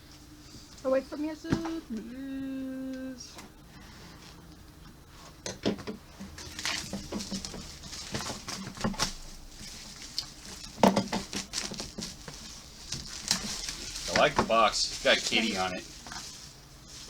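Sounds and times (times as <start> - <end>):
cardboard box scratches and rustles: 6.4 - 17.0.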